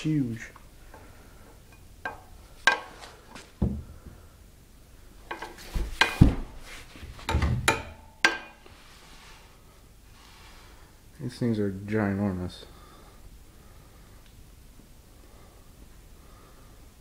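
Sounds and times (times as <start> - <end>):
bike parts clicking and knocking: 1.7 - 3.8, 5.3 - 6.4, 7.2 - 8.6.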